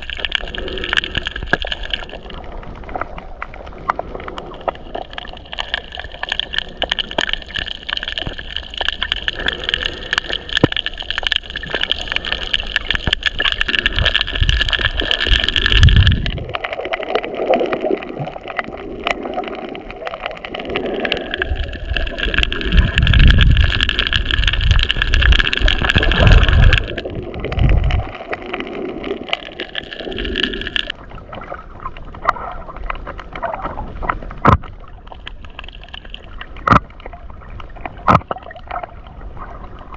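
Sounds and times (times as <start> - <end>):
low surging water: 0.0 - 39.9
snapping shrimp crackle: 4.7 - 16.3, 20.2 - 28.4.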